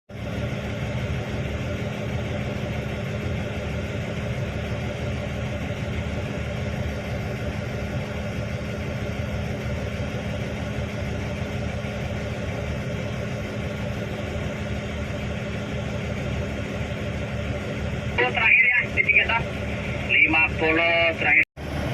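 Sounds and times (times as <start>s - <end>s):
diesel engine droning: 0.1s - 21.9s.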